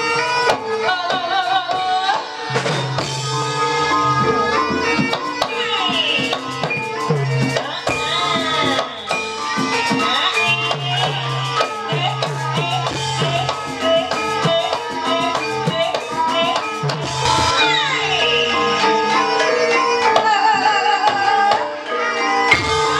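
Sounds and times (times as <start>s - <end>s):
hand drum strokes: 0.0s - 18.8s
gamelan ensemble music: 0.0s - 22.9s.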